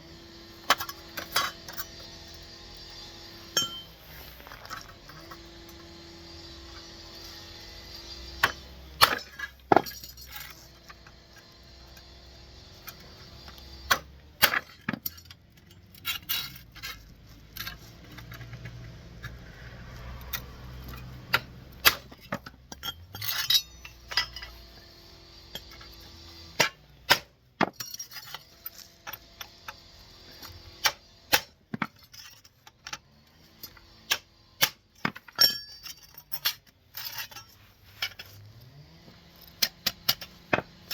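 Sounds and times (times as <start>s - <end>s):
metallic clinks and knocks: 3.6s - 4.0s, 22.1s - 24.6s, 35.2s - 38.4s.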